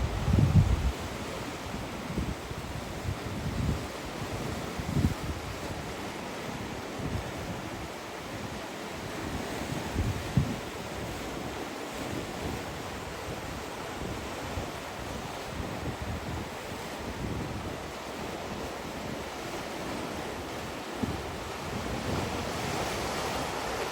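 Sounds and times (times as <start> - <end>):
wind buffeting microphone: 0.0 - 5.9, 9.1 - 11.6, 20.6 - 23.8
sea waves washing on shore: 0.0 - 23.9.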